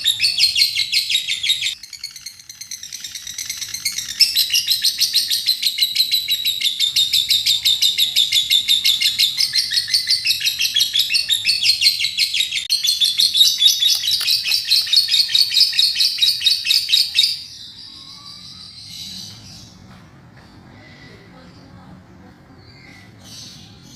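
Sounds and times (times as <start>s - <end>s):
lovebird chattering trill: 0.0s - 18.3s
faint bird chirps: 0.0s - 19.7s.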